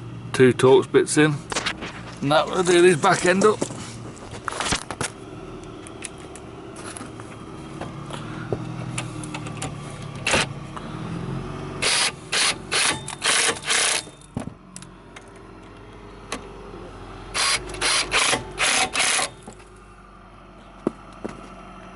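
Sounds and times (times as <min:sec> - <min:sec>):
ratchet wrench tightening bolts: 0:11.8 - 0:14.2.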